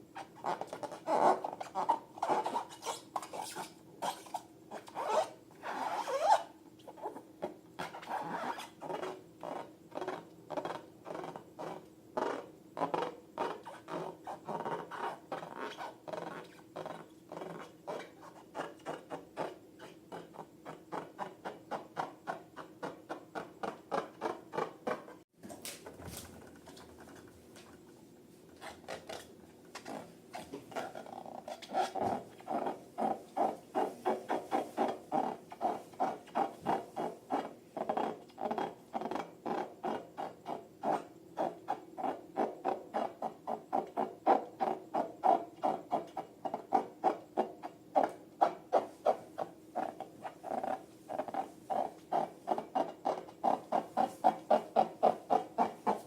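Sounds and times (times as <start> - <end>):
faint steady hum: 0.0 - 56.0
rubber balloons squeaking: 0.1 - 7.1, 7.8 - 22.0, 28.6 - 39.7, 47.6 - 56.0.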